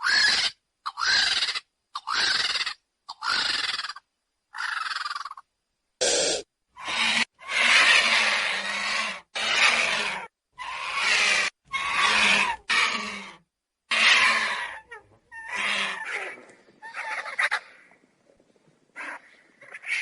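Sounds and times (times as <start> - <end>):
vulture hissing calls: 6.0 - 13.2.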